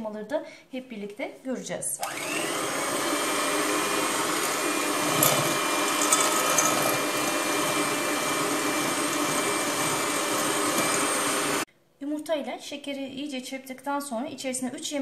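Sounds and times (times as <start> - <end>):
electric hand mixer running: 2.0 - 11.7.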